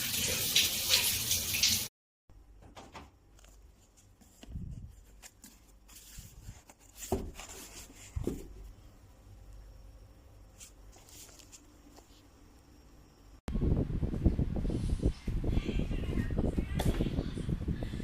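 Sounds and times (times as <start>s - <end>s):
faint handling noises: 2.6s - 9.6s, 10.4s - 12.6s.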